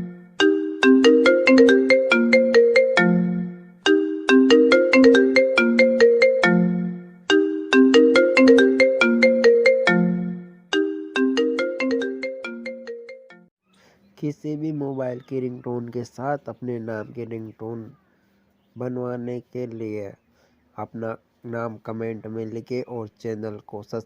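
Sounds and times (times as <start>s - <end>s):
mobile phone ringtone: 0.0s - 13.5s.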